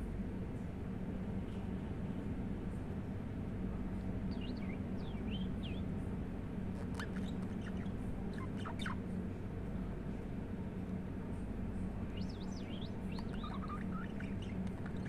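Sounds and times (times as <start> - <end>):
low hum: 0.0 - 15.0
budgie chirping: 4.3 - 5.9, 6.8 - 9.0, 12.2 - 15.0.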